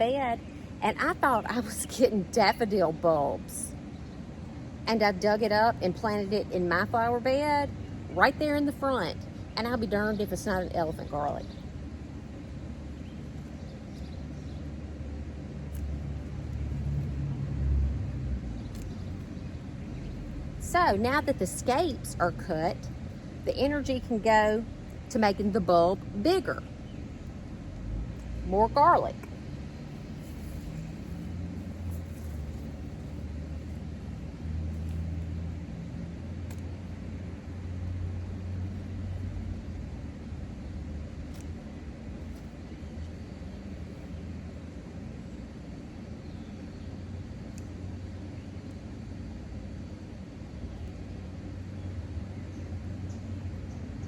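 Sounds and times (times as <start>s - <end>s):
engine running low rumble: 0.0s - 54.0s
vehicle engine passing by: 16.5s - 19.2s.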